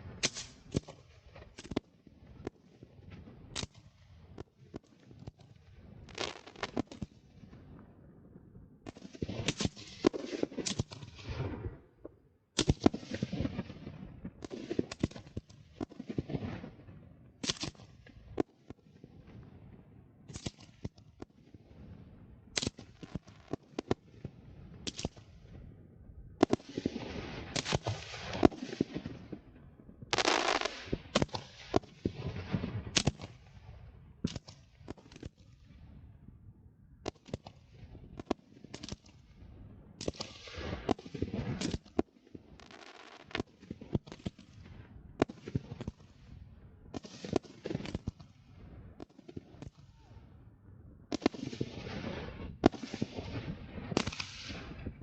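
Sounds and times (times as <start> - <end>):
firework crackling: 6.1 - 7.0, 26.4 - 29.4, 30.1 - 33.6, 42.6 - 44.4, 51.1 - 55.0
firework bangs: 26.4 - 33.6, 51.1 - 55.0.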